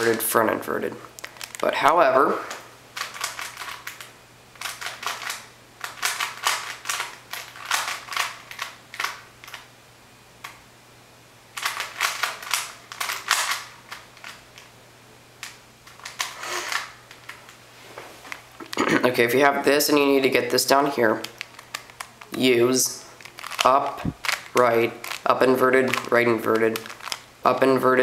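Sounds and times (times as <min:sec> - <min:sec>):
puzzle cube clicking clatter: 0:03.0 - 0:09.7, 0:11.6 - 0:14.7, 0:15.4 - 0:17.5, 0:20.3 - 0:22.4, 0:23.2 - 0:27.2.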